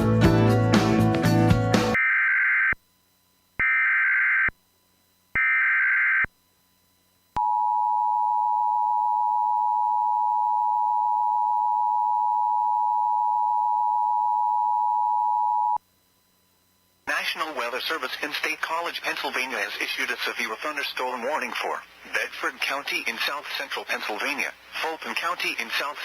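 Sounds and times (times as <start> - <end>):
music: 0.0 - 2.0.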